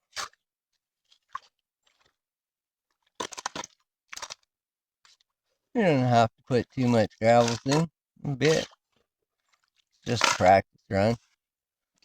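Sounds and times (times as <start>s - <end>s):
gravel crunching in a pan: 10.1s - 11.2s.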